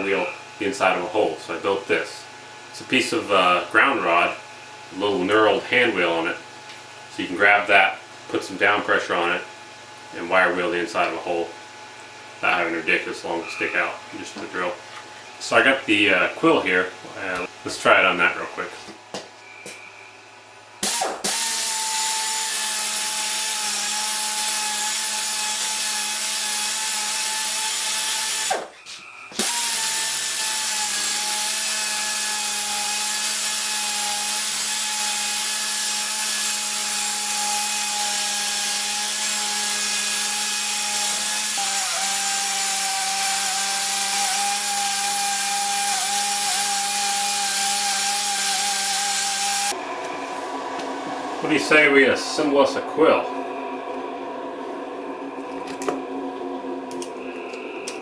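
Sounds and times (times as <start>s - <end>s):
electric drill spinning wire wheel: 20.8s - 49.8s.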